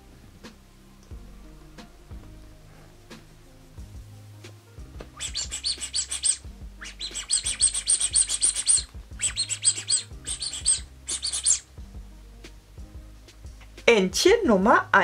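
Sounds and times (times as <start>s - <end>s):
background music: 0.0s - 15.0s
rubber duck squeaking: 5.1s - 11.7s.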